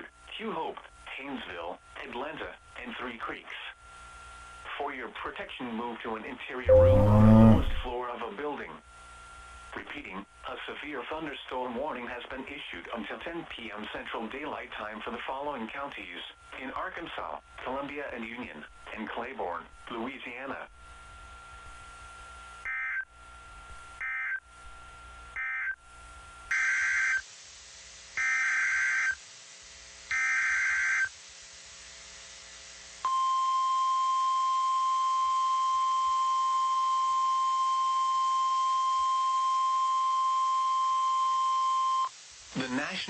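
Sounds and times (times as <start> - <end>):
steady warning alarm tone: 6.7 - 7.9.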